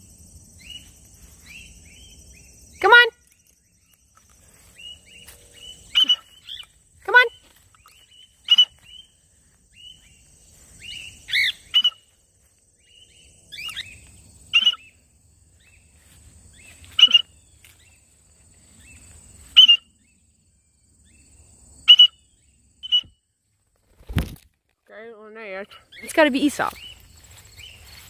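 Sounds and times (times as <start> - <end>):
cockatiels calling: 10.8 - 12.1, 16.9 - 17.3.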